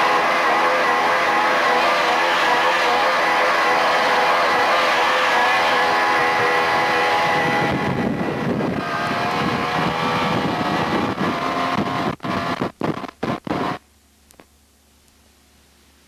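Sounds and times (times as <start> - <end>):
motor running with rushing noise: 0.0 - 13.9.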